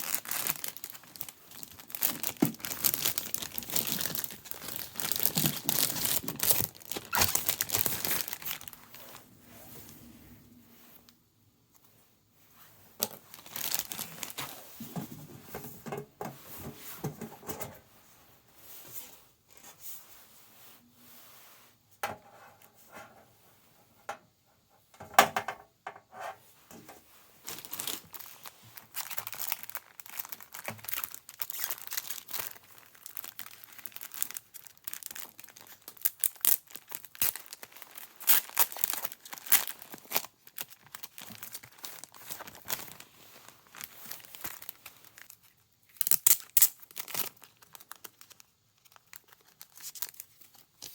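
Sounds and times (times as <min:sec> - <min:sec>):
packaging crinkling and tearing: 0:00.0 - 0:09.3, 0:13.0 - 0:14.6, 0:27.4 - 0:50.9.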